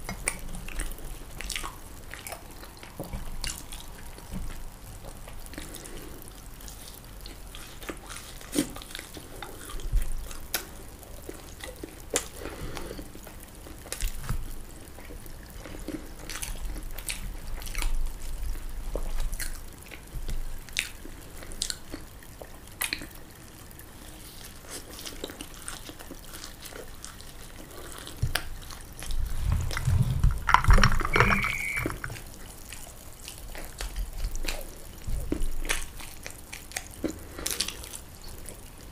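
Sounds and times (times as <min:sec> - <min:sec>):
person chewing food wetly: 0:00.0 - 0:38.9.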